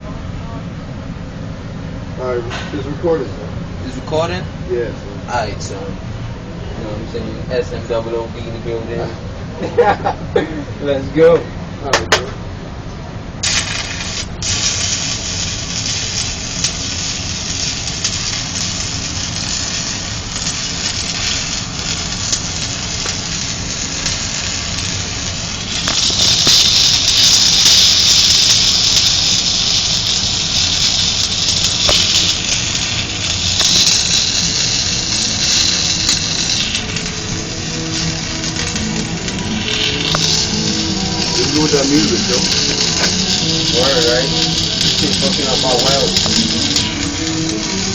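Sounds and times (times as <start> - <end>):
welding arc crackling and hissing: 13.4 - 47.9.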